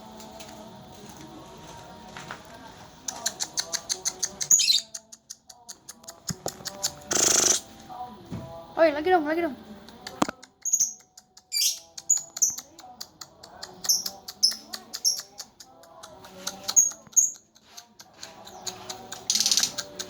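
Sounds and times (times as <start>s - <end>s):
lovebird chirping: 3.1s - 5.1s, 7.1s - 7.6s, 10.6s - 12.6s, 18.4s - 20.0s.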